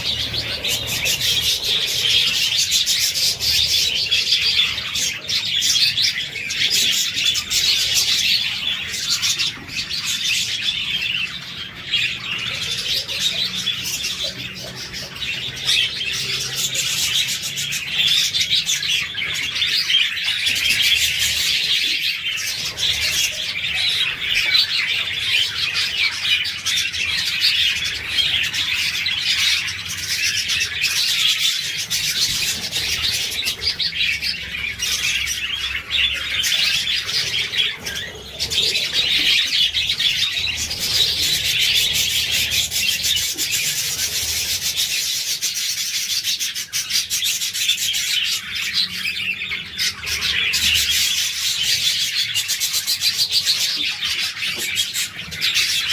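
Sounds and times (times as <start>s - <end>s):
budgerigars chattering: 0.0s - 55.9s.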